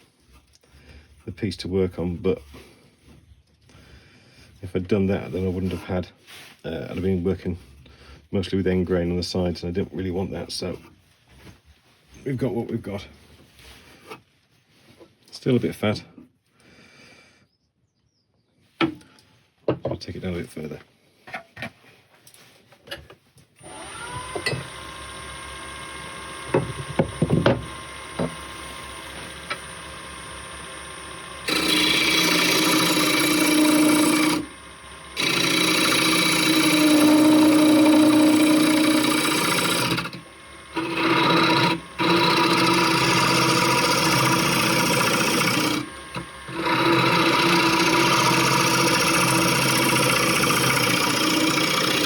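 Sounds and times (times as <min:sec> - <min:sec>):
turning tool scraping wood: 0:00.0 - 0:15.6, 0:23.6 - 0:52.0
wood lathe humming: 0:23.6 - 0:52.0.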